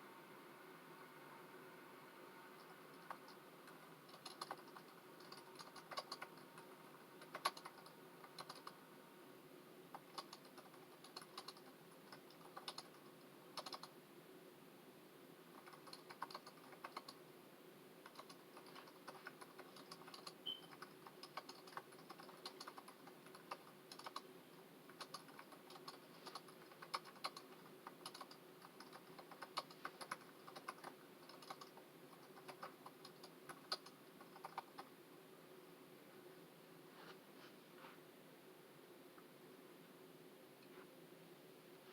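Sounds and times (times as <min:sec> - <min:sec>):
keyboard typing: 0:02.6 - 0:08.8, 0:09.9 - 0:14.0, 0:15.5 - 0:17.2, 0:18.0 - 0:24.3, 0:24.9 - 0:34.9.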